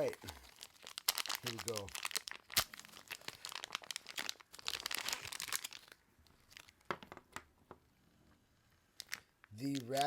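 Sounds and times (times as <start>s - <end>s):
plastic bag crinkling and tearing: 0.0s - 6.9s, 9.0s - 10.0s.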